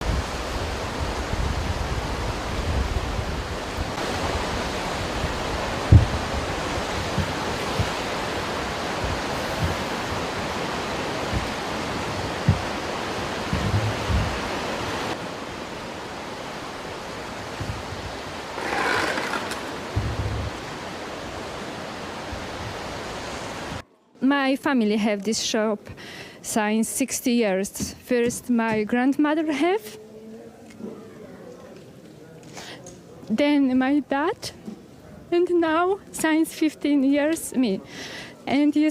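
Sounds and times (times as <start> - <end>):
wind thumps on microphone: 0.0 - 15.2, 17.4 - 20.8
rushing floodwater: 0.0 - 23.8.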